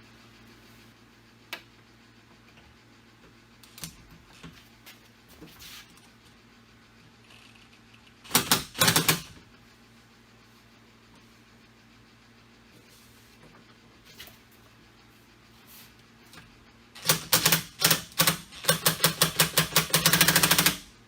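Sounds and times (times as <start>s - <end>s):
rapid loud clicking: 8.2s - 9.3s, 17.0s - 20.9s.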